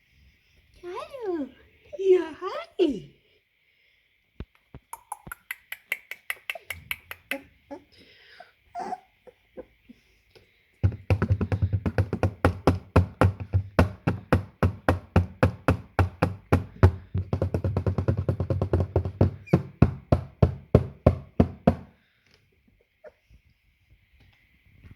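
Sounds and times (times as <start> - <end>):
rapid knocking on hard surface: 10.8 - 22.0.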